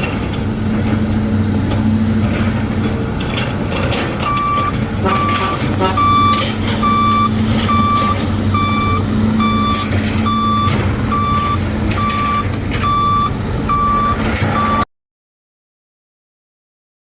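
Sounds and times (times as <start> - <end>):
diesel engine running: 0.0 - 14.8
vehicle back-up alarm beeping: 4.2 - 14.9.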